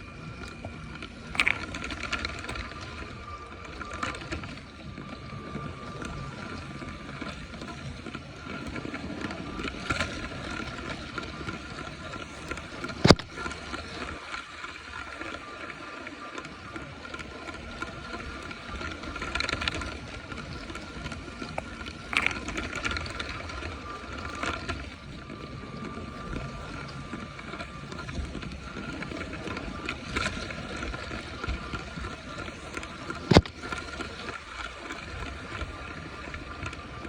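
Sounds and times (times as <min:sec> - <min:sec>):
toy train motor whining: 0:00.0 - 0:37.0.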